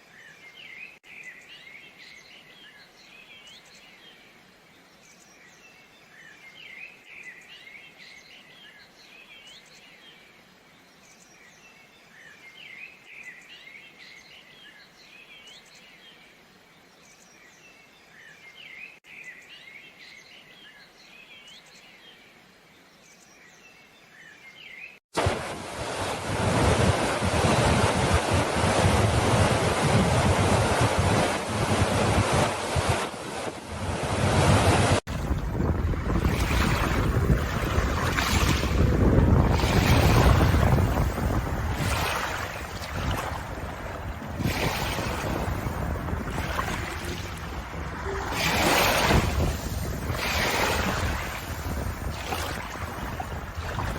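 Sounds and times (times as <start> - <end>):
ocean surf rushing: 25.2 - 53.9
wind buffeting microphone: 25.8 - 53.9.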